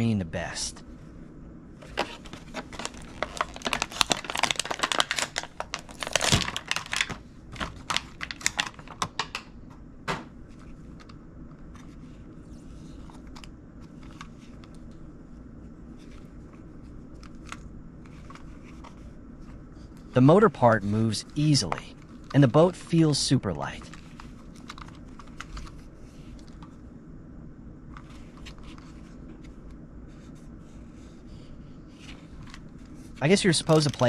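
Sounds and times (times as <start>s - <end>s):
plastic packaging crinkling: 2.0s - 9.4s, 33.6s - 34.0s.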